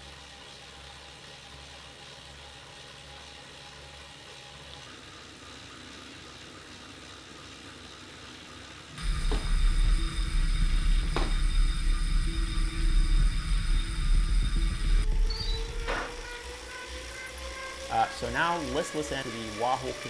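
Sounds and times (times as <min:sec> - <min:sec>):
bike trainer whirring: 0:00.0 - 0:20.0
low rumble with whine: 0:09.0 - 0:20.0.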